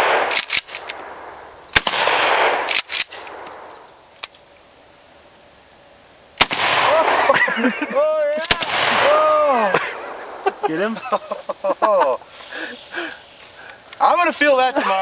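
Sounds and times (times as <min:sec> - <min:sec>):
gunshots with rolling echo: 0:00.0 - 0:03.8, 0:06.4 - 0:07.6, 0:08.4 - 0:10.9
sharp clicks: 0:00.2 - 0:04.6
person whooping: 0:08.4 - 0:09.9.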